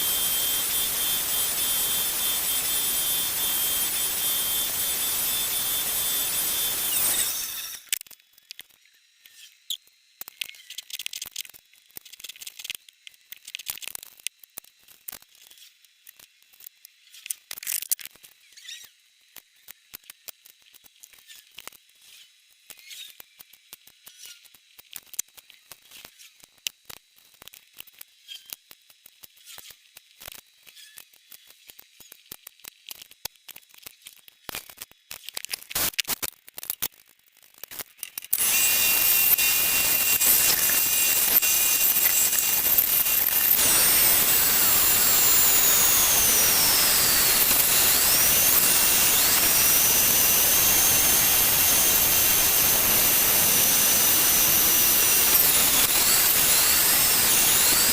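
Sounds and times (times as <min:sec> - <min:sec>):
faint high squeaks and scrapes: 0:18.3 - 0:19.0, 0:21.2 - 0:23.2, 0:24.0 - 0:24.5, 0:30.6 - 0:31.6.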